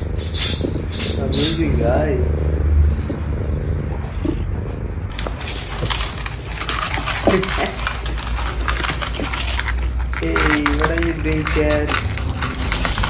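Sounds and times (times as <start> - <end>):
low hum: 0.0 - 13.0
crackling and clicking: 5.1 - 13.0.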